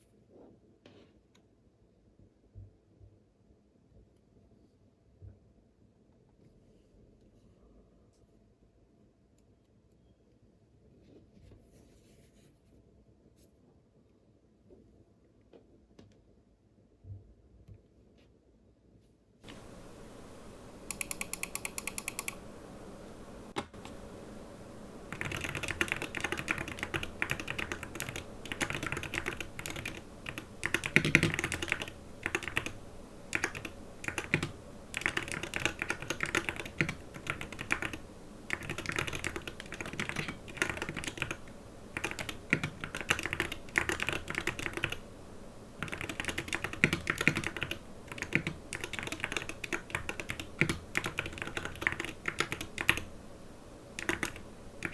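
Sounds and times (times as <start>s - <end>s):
mechanical keyboard typing: 19.4s - 45.1s, 45.8s - 53.2s, 53.9s - 54.9s.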